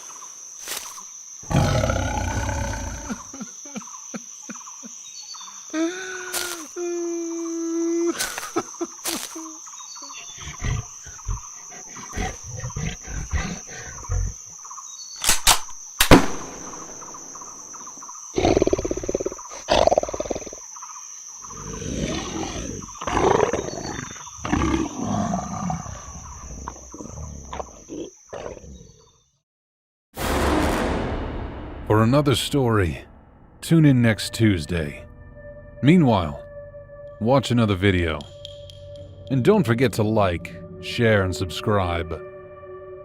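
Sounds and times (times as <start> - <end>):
rough growling roars: 1.5 - 3.2, 21.5 - 27.8.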